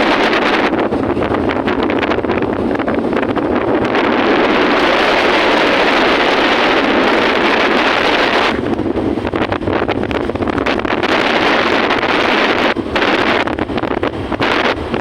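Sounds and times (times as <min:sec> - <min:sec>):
moving vehicle running noise: 0:00.0 - 0:15.0
wind rushing over microphone: 0:00.0 - 0:15.0.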